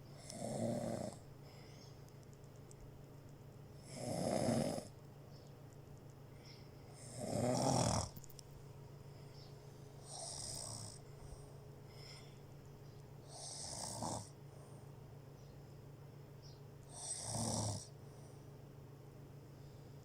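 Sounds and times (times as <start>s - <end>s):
steady low hum: 0.0s - 20.0s
breathy snoring: 0.2s - 1.6s, 3.8s - 4.9s, 6.9s - 8.2s, 10.0s - 12.3s, 13.2s - 14.4s, 16.9s - 18.0s.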